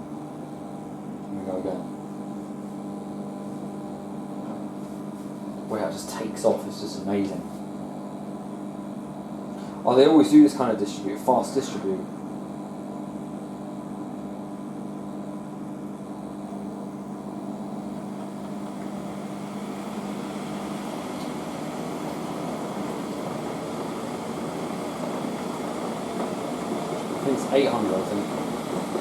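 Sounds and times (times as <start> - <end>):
washing machine motor hum: 0.0 - 29.0
washing machine drum spin rushing: 15.0 - 29.0.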